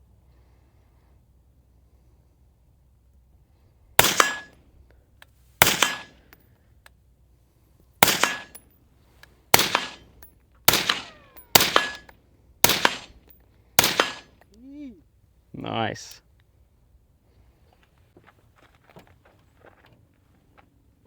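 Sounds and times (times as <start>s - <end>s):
rifle shots: 4.0s - 4.5s, 5.6s - 6.3s, 8.0s - 8.6s, 9.5s - 14.4s.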